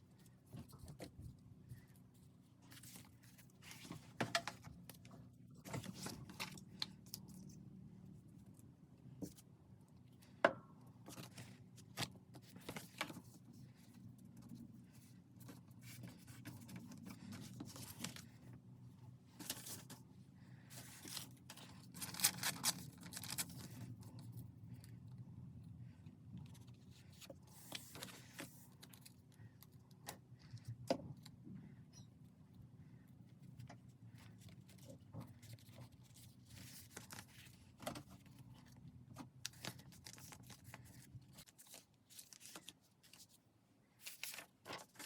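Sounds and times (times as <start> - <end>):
low steady hum: 0.0 - 45.0
paper rustling: 20.6 - 24.3, 26.5 - 29.2, 34.1 - 43.4, 44.0 - 45.0.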